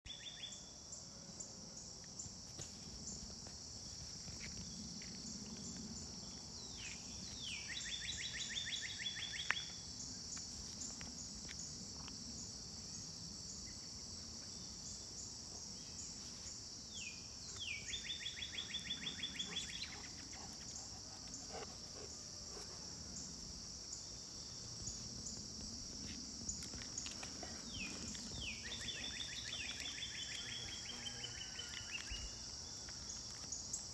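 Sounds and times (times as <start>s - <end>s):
songbird singing with trill: 0.1s - 0.6s, 6.6s - 9.8s, 16.9s - 20.5s, 27.7s - 32.9s
high-pitched insect chorus: 0.1s - 33.9s.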